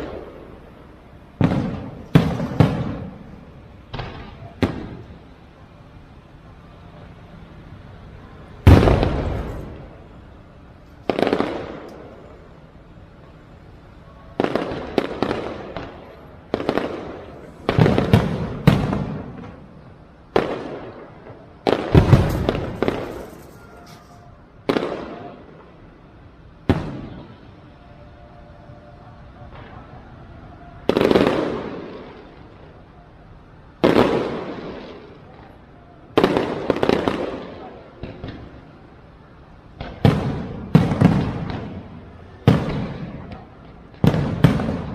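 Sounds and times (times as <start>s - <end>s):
fireworks bangs: 0.0s - 25.9s, 26.6s - 27.6s, 29.2s - 44.9s
fireworks crackling: 0.0s - 27.5s, 29.2s - 44.9s
fireworks shells bursting: 21.7s - 25.2s.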